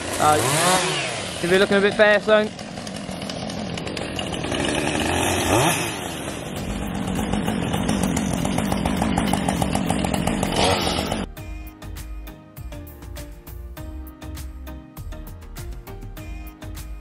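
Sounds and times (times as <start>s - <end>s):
chainsaw revving: 0.0s - 11.3s
music: 11.0s - 17.0s.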